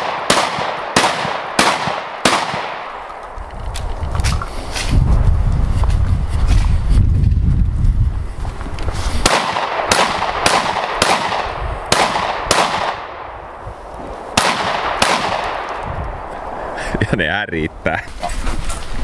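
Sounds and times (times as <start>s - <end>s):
shotgun shots echoing: 0.0s - 3.1s, 9.2s - 13.4s, 14.2s - 15.8s
low rumble: 3.0s - 8.9s.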